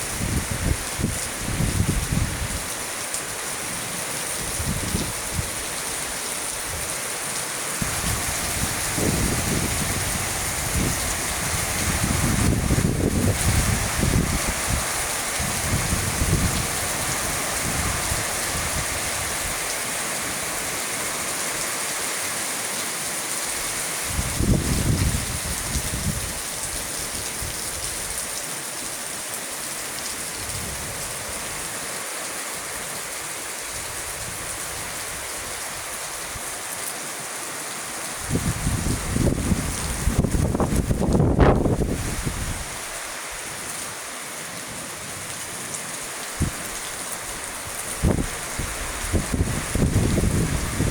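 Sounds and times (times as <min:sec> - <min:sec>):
wind buffeting microphone: 0:00.0 - 0:02.7, 0:07.8 - 0:19.6, 0:24.1 - 0:26.4, 0:38.2 - 0:43.0, 0:46.4 - 0:50.9
heavy rain falling: 0:00.0 - 0:50.9.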